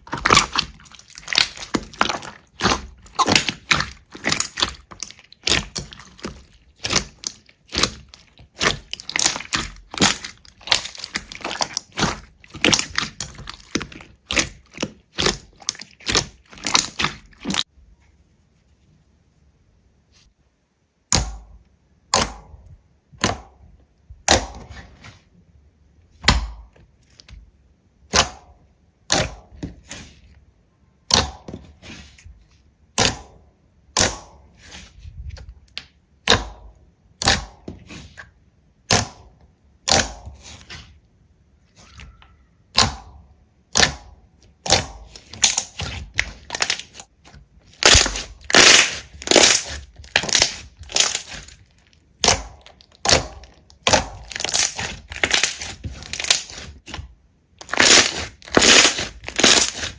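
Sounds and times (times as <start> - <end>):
slime popping: 0.0 - 17.7, 38.8 - 40.8, 41.8 - 57.0, 57.6 - 59.9.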